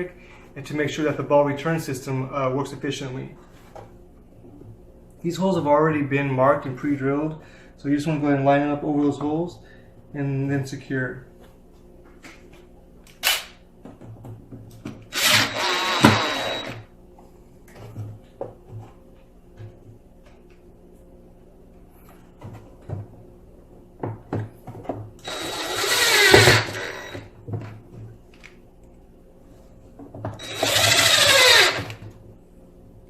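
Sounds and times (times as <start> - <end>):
power drill driving screws: 15.1 - 16.8, 25.2 - 27.2, 30.4 - 32.0.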